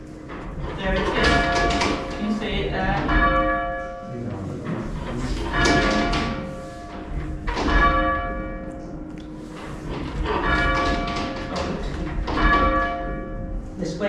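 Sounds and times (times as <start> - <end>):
church bell ringing: 1.3 - 4.2, 4.9 - 14.0.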